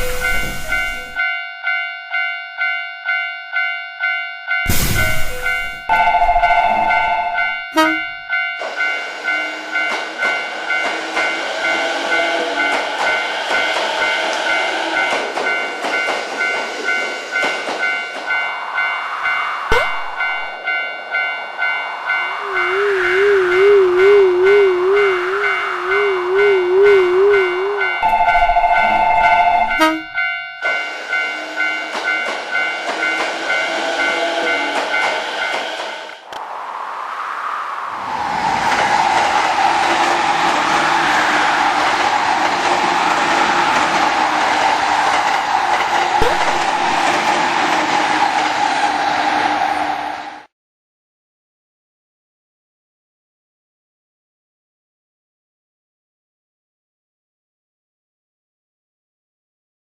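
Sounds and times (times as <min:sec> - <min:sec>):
level-crossing alarm bell ringing: 0:00.0 - 0:36.1
passing train wheel clicks: 0:05.4 - 0:11.8, 0:12.6 - 0:18.5, 0:22.4 - 0:36.5, 0:38.6 - 0:49.8.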